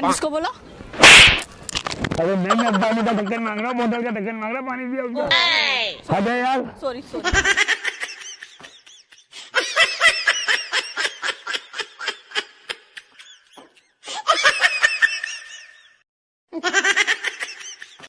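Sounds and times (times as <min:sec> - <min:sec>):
person laughing: 0:02.4 - 0:04.0.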